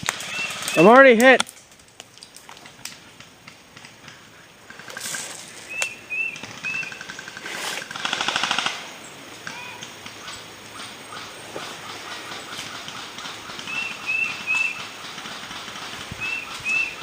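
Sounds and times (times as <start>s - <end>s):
airsoft guns firing bursts: 7.9s - 8.9s.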